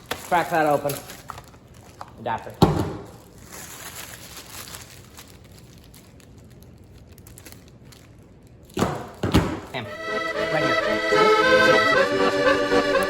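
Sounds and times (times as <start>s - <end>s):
packaging crinkling and rustling: 0.0s - 9.8s.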